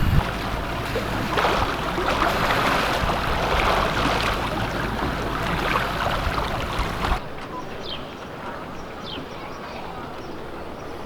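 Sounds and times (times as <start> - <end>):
low even hum: 0.0 - 7.2
water rushing along hull: 0.0 - 7.4.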